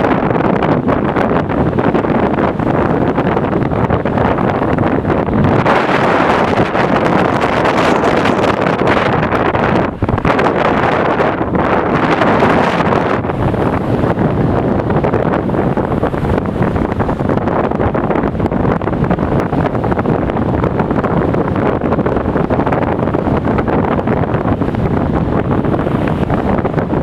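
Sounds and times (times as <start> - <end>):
sea surf: 0.0 - 21.1
wind buffeting microphone: 0.0 - 27.0.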